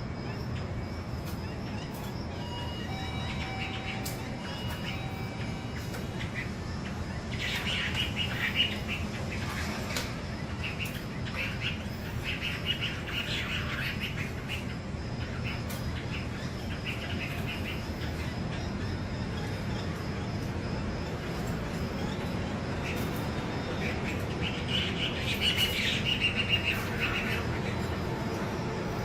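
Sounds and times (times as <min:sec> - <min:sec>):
low background hum: 0:00.0 - 0:29.0
songbird chirping: 0:00.0 - 0:29.0.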